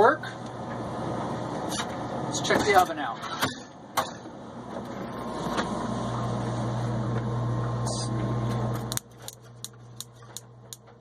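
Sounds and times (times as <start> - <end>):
low mechanical hum: 0.0 - 11.0
stove spark igniter clicking: 8.8 - 10.9.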